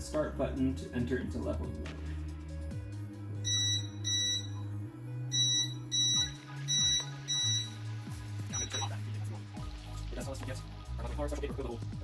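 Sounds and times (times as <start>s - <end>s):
background music with low notes: 0.0s - 12.0s
printer beeping: 3.5s - 4.6s, 5.4s - 9.0s.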